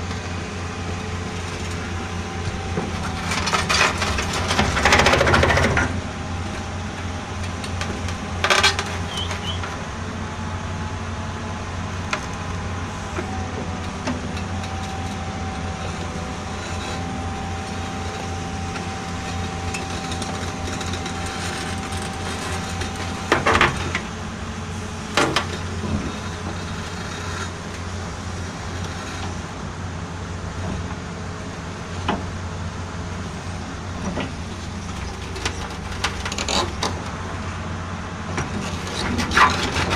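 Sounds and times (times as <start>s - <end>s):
excavator diesel engine running: 0.0s - 39.9s
thin steady whine: 6.0s - 35.9s.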